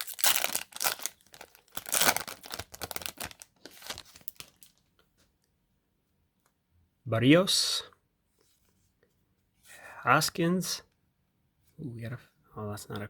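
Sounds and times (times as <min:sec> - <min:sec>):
foil wrapper tearing and crinkling: 0:00.0 - 0:04.8.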